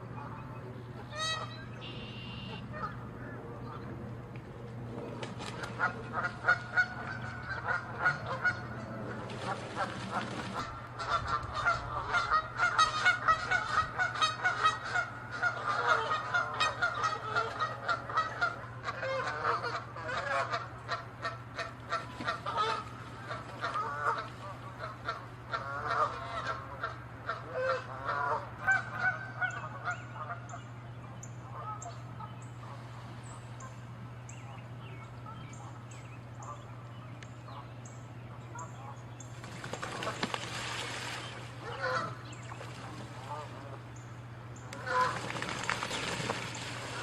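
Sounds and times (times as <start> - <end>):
geese honking: 1.0 - 3.8, 5.7 - 30.7, 41.3 - 43.8, 44.6 - 47.0.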